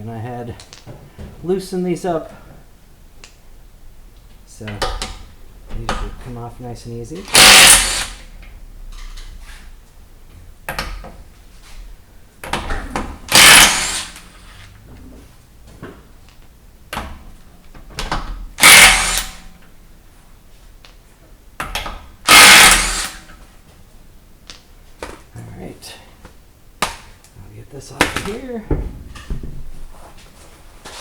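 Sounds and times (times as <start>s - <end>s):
impact wrench spinning bolts: 7.2s - 8.3s, 13.3s - 14.4s, 18.6s - 19.5s, 22.3s - 23.3s.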